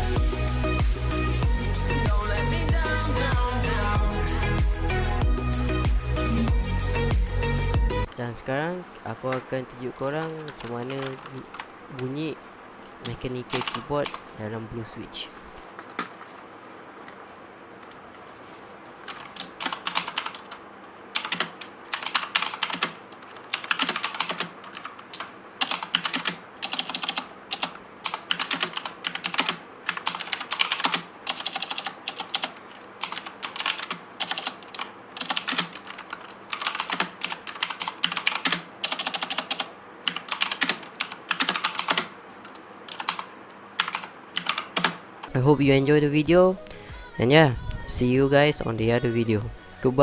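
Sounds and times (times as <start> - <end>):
clicky mechanical keyboard typing: 9.0 - 14.6, 19.0 - 45.4.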